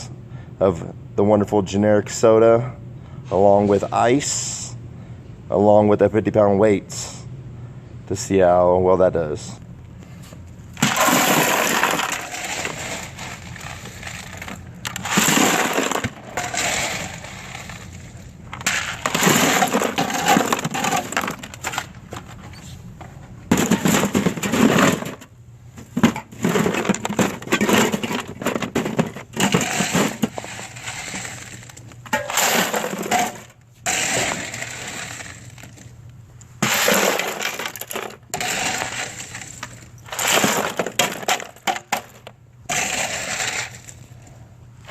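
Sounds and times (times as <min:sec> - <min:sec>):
ice cubes and cans clattering: 0:10.8 - 0:22.3, 0:23.5 - 0:35.8, 0:36.6 - 0:44.0.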